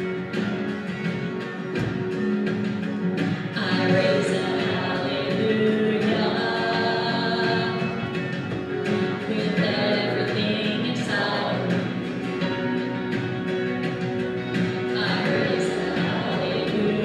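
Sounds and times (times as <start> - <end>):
guitar: 0.0 - 17.0
woman singing worship song: 3.6 - 8.0, 9.2 - 12.0, 15.0 - 17.0.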